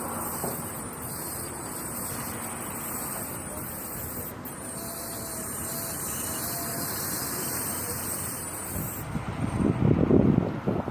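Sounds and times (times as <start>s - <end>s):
thin wheel squeaks: 0.0s - 9.8s
wind buffeting microphone: 6.0s - 10.9s.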